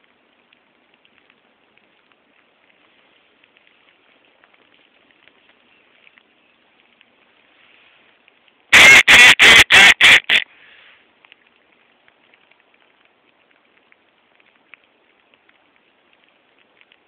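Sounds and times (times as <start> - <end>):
faint crackle: 0.0 - 17.0
duck call quacks: 8.7 - 10.5.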